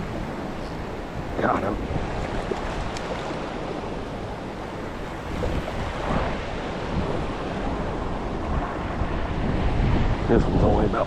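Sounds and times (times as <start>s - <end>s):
waterfall and rapids rushing: 0.0s - 11.0s
wind on microphone: 0.0s - 11.0s.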